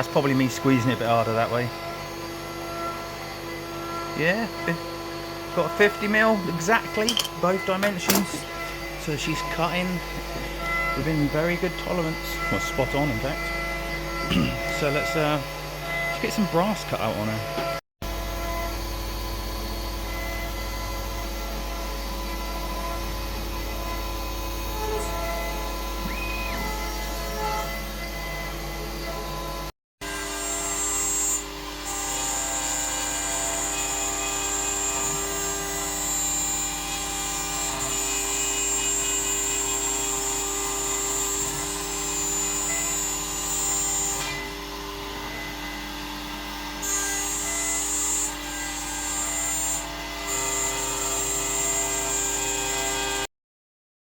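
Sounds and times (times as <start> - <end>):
cnc spindle whining: 0.0 - 17.8.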